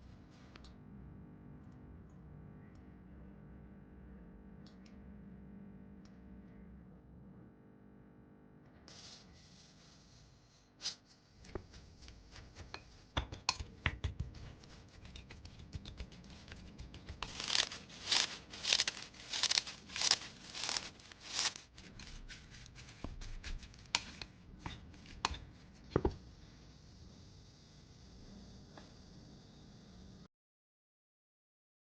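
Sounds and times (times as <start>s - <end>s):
clicks and taps: 12.0s - 20.8s
loud rasping strokes: 14.6s - 23.0s.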